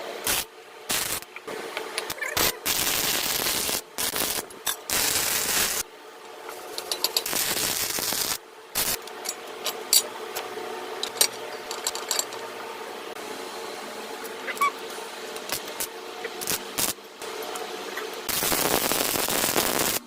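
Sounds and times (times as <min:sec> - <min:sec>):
welding arc crackling: 0:00.0 - 0:05.9, 0:06.5 - 0:09.1, 0:14.5 - 0:20.0
faint hum: 0:00.0 - 0:20.0.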